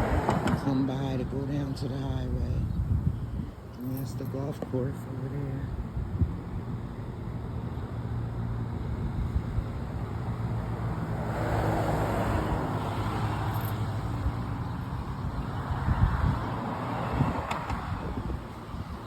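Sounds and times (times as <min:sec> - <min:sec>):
car passing: 0:00.0 - 0:02.6, 0:07.4 - 0:19.0.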